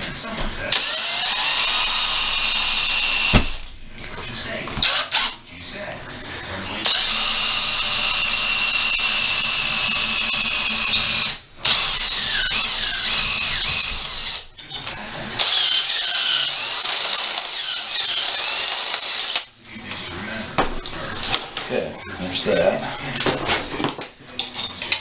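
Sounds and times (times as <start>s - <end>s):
electric drill whining: 0.7s - 3.7s, 6.8s - 14.5s, 15.4s - 19.5s.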